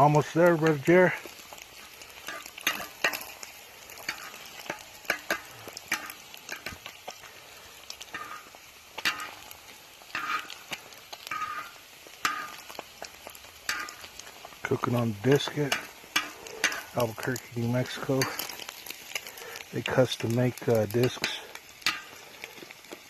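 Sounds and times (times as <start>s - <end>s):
food sizzling on a steel disc: 0.0s - 23.0s
stirring scrapes and clicks: 10.1s - 17.4s.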